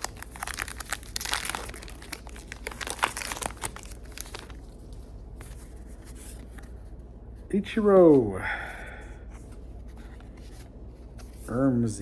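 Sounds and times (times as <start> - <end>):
wrapper tearing and crinkling: 0.0 - 4.8.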